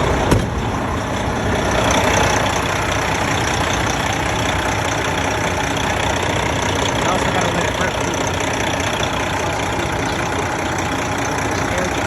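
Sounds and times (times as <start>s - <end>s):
diesel truck engine idling: 0.0s - 12.0s.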